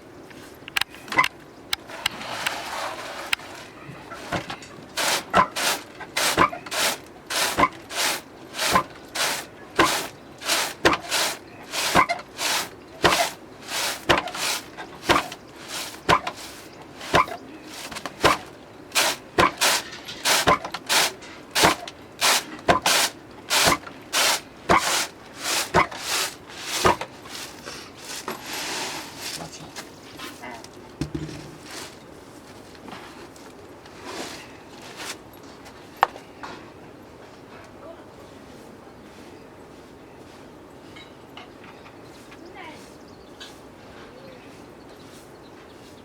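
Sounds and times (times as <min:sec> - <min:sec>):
grain worked with hand tools: 0:01.9 - 0:29.5.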